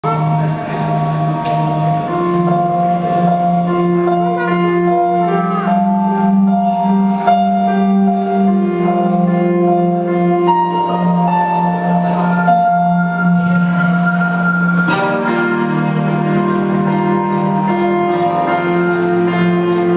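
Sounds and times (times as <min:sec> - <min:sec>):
slow instrumental music: 0:00.0 - 0:19.9.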